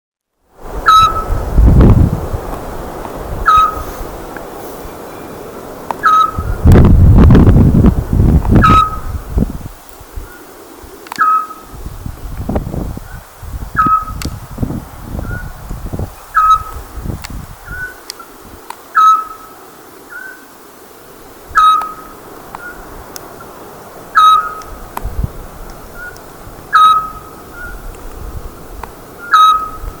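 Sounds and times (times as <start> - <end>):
owl whistled calls: 0.8 - 1.4, 3.4 - 4.0, 6.0 - 6.7, 8.6 - 9.2, 11.2 - 11.7, 13.8 - 14.2, 16.3 - 16.8, 17.6 - 18.0, 18.9 - 20.4, 21.5 - 22.8, 24.1 - 24.7, 26.0 - 27.9, 29.2 - 30.0.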